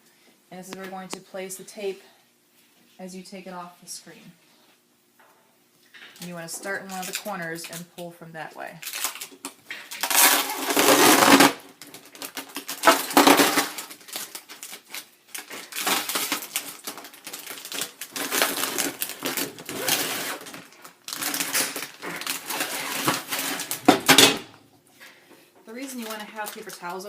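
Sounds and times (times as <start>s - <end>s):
tape ripping off: 8.8s - 24.4s.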